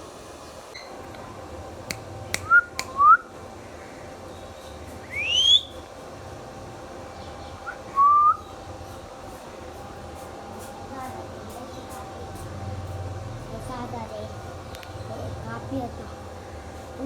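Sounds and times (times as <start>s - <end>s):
sharp clicks: 1.9s - 3.0s
parakeet rising whistles: 5.1s - 5.8s.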